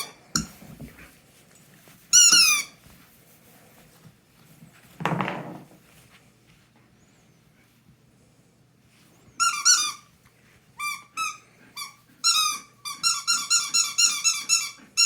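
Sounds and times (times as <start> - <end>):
rubber squeaky toy squeak: 2.1 - 2.7, 9.4 - 10.1, 10.8 - 15.0.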